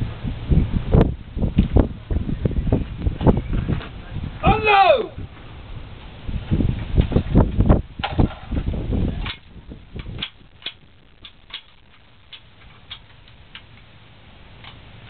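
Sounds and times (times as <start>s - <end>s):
rifle bolts clicking: 9.2s - 13.9s.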